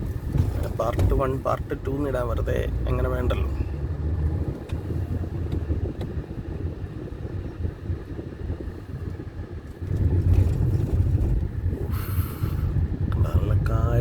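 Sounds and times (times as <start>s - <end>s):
car engine and tyres rumbling: 0.0s - 14.0s.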